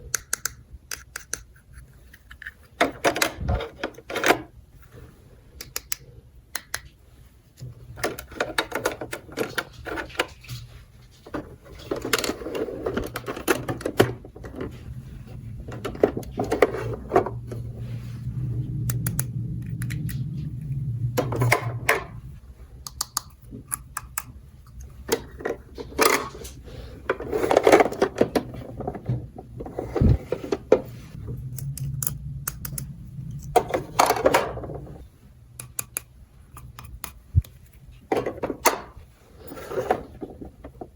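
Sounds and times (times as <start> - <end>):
plastic toy pieces clicking: 0.0 - 3.2
low steady hum: 0.0 - 40.9.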